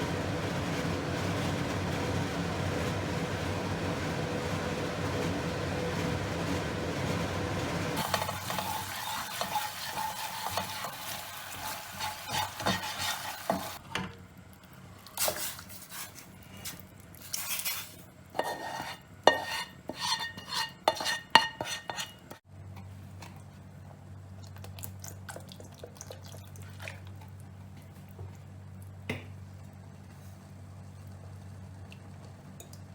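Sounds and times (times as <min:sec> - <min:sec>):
food sizzling in a pan: 0:08.0 - 0:13.8
spatula scraping metal pan: 0:08.0 - 0:13.8, 0:17.4 - 0:22.4.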